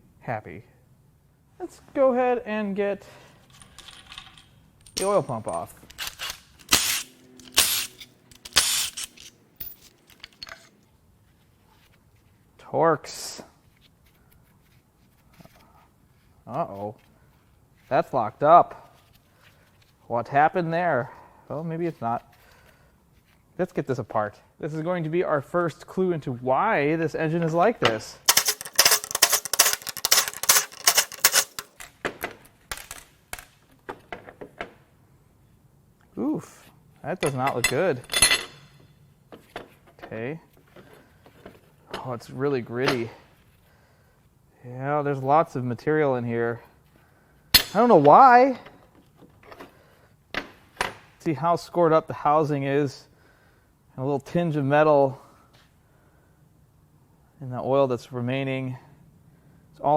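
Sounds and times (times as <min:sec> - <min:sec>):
metallic clicking of hand tools: 0:03.9 - 0:10.7, 0:28.3 - 0:31.8
light clicks and rattles: 0:28.3 - 0:31.9.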